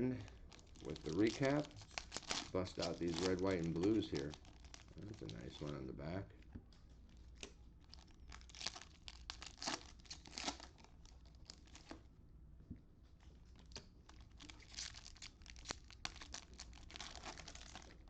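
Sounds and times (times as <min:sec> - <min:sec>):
plastic wrapper crinkling and tearing: 0:00.0 - 0:06.2, 0:07.1 - 0:12.0, 0:13.6 - 0:18.0
cards being handled: 0:00.2 - 0:05.9.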